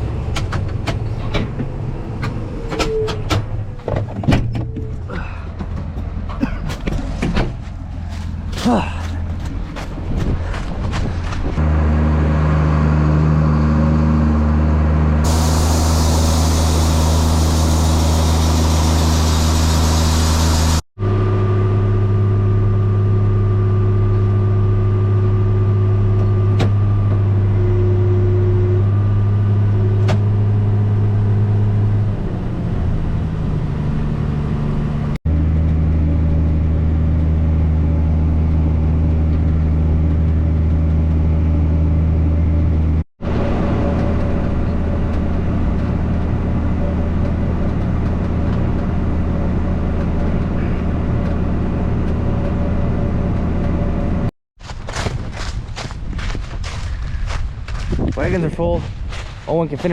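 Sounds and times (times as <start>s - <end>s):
farm machinery engine running: 9.3s - 59.9s
loud hiss: 15.3s - 20.8s.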